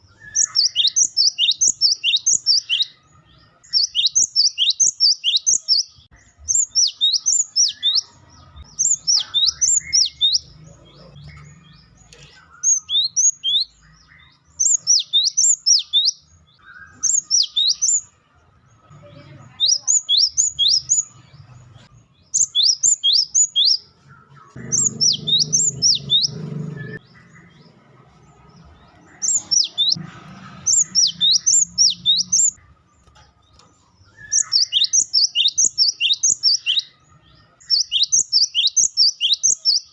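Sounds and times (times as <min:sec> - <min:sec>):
bird whistling calls: 0:00.2 - 0:03.0, 0:08.8 - 0:10.4, 0:24.5 - 0:27.0, 0:34.2 - 0:36.9.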